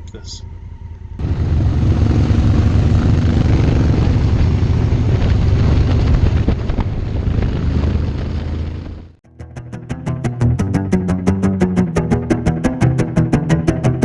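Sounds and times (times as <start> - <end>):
motorcycle engine rumble: 0.0 - 9.2
wind rushing over microphone: 1.2 - 9.2.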